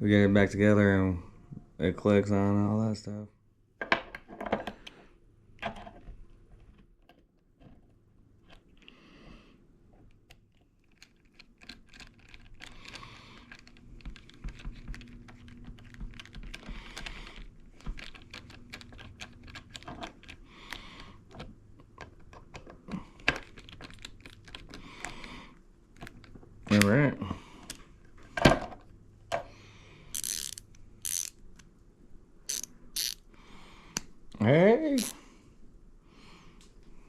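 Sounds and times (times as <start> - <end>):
small metal parts clicking: 10.5 - 21.4, 30.1 - 31.6, 32.5 - 33.2.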